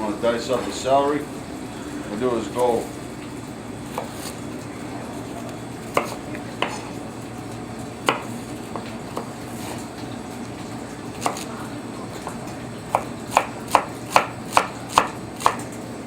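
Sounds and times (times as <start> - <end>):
knife knocking on cutting board: 6.0 - 6.8.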